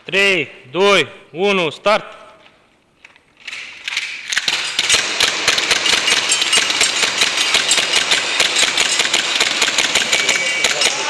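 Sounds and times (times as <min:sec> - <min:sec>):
airsoft pistol shots: 0:04.4 - 0:11.0.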